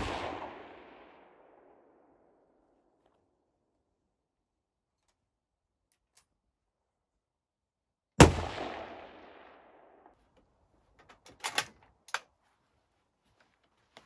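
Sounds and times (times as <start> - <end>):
rifle shot with echo: 0.0 - 2.0, 8.2 - 10.0.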